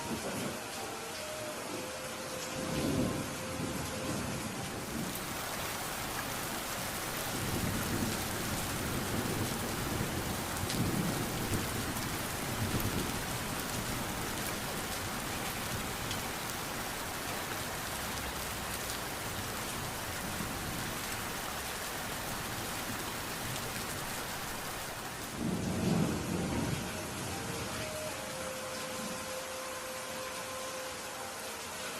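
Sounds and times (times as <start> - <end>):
steady rain: 0.0 - 31.9
thunder rumbling: 2.6 - 17.4, 25.3 - 27.8.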